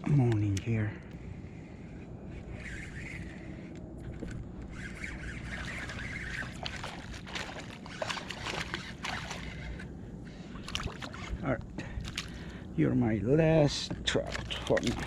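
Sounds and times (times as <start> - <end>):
steady low rumble: 0.0 - 15.0
water sloshing and splashing: 4.1 - 12.7, 13.8 - 15.0.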